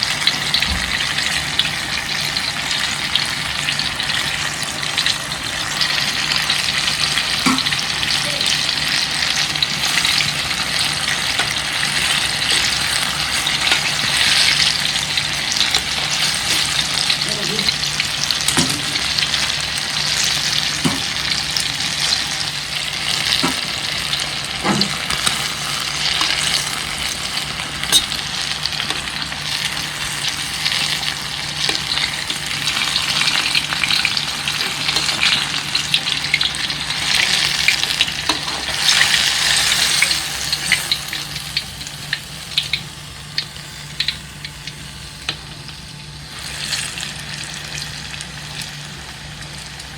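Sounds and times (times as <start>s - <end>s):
deep-frying sizzle: 0.0s - 49.9s.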